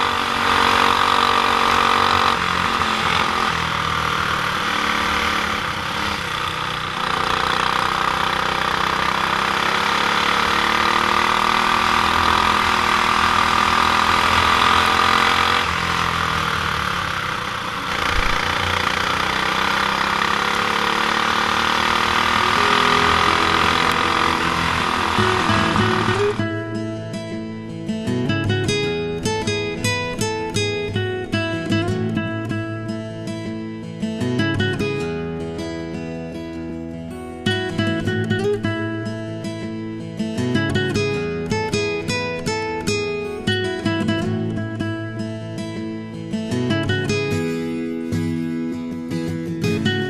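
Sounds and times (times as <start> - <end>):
kart engine running: 0.0 - 27.0.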